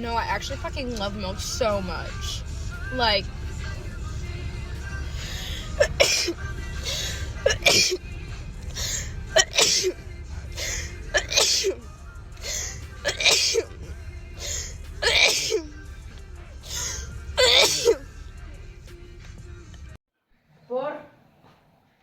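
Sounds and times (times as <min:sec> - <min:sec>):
music: 0:00.0 - 0:20.0
breathing: 0:05.0 - 0:05.8
person sneezing: 0:07.0 - 0:08.0, 0:09.4 - 0:10.0, 0:10.6 - 0:11.8, 0:14.4 - 0:15.7, 0:16.7 - 0:18.0.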